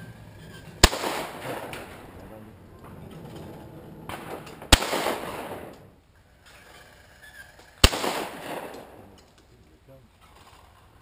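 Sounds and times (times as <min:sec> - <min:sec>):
shotgun shots with echo: 0:00.8 - 0:02.2, 0:04.1 - 0:05.9, 0:07.8 - 0:09.1.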